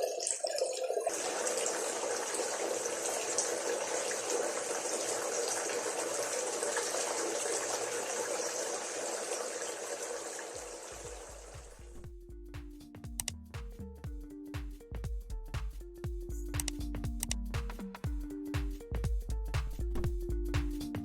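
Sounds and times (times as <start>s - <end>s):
water running and splashing: 0.0s - 12.0s.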